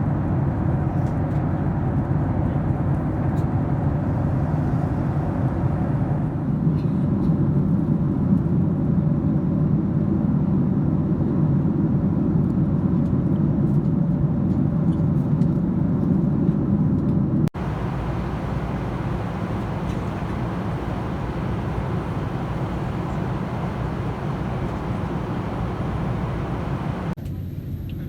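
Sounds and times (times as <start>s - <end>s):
airliner cabin rumble: 17.5s - 27.2s.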